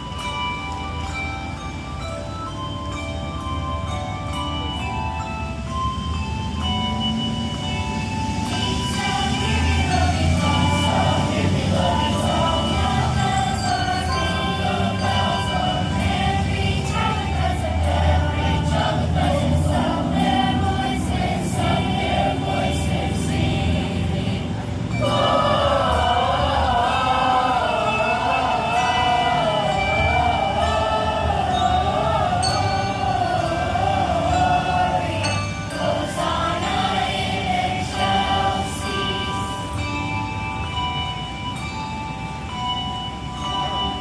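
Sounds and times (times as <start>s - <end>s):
handbells ringing: 0.0s - 44.0s
choir singing: 8.4s - 41.0s, 43.4s - 44.0s.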